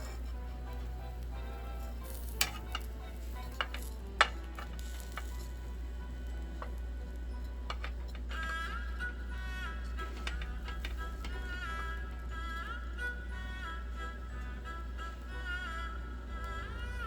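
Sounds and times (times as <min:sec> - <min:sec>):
food sizzling in a pan: 0:00.0 - 0:07.0.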